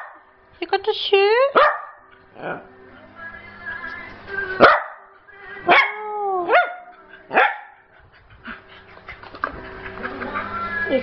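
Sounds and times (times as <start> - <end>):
dog barking: 0.0 - 0.2, 1.5 - 2.6, 4.6 - 5.1, 5.7 - 7.8.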